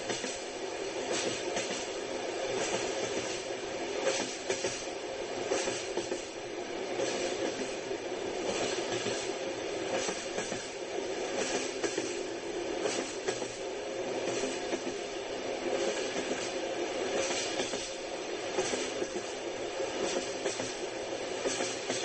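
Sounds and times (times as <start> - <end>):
train rumbling on rails: 0.0 - 22.0
train wheels clacking: 0.0 - 22.0.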